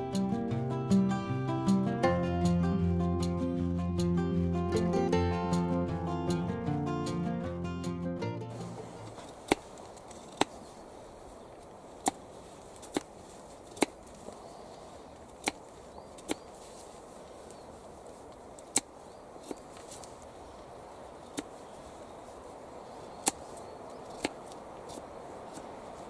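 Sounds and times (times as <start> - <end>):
wood chopping strikes: 8.5 - 10.9, 11.6 - 14.4, 15.2 - 16.8, 18.5 - 20.1, 21.3 - 21.6, 23.2 - 25.8.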